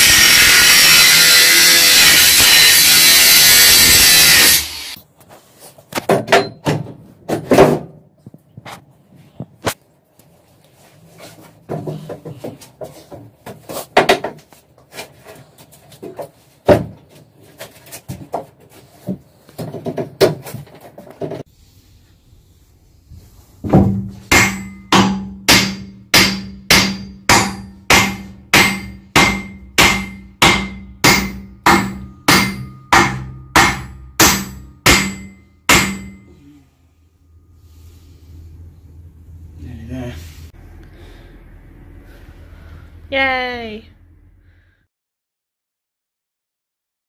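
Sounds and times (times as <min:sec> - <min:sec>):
hammer striking metal: 0:23.8 - 0:36.5.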